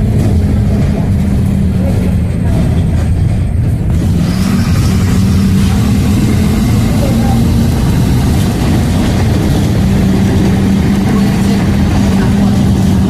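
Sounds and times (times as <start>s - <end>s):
vehicle engine idling: 0.0s - 13.0s.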